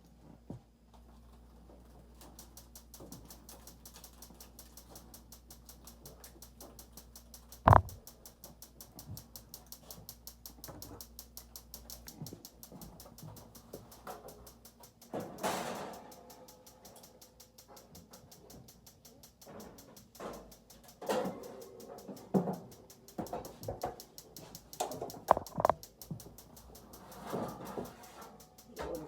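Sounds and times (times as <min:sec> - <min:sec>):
gas oven igniter ticking: 0:02.2 - 0:29.0
loud knock: 0:07.7 - 0:08.0.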